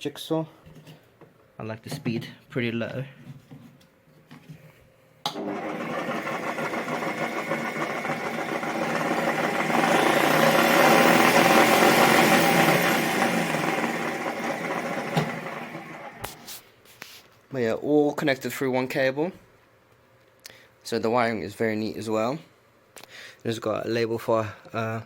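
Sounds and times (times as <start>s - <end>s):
jigsaw running: 5.4s - 16.4s.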